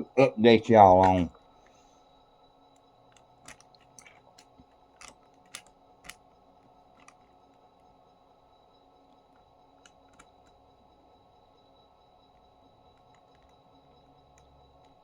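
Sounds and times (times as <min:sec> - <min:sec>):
faint steady hum: 0:00.0 - 0:15.0
small objects clicking and tapping: 0:03.1 - 0:07.3.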